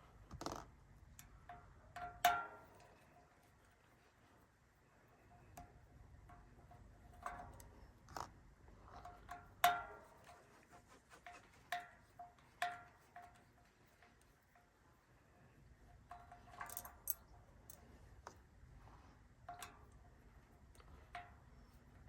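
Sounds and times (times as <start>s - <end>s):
metal brake rotor ringing clinks: 16.3s - 17.2s.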